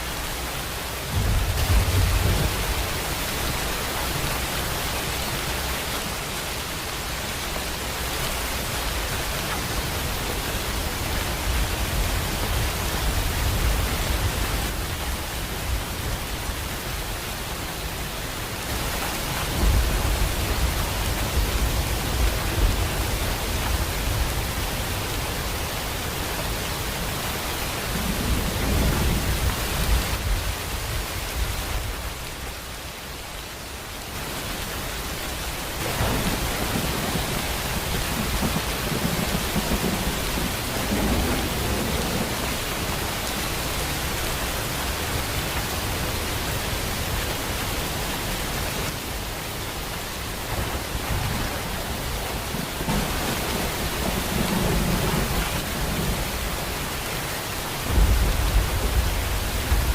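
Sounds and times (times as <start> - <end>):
heavy rain: 0.0 - 59.9
thunder rumbling: 1.0 - 3.7, 35.8 - 43.0, 50.2 - 56.9, 57.8 - 59.9.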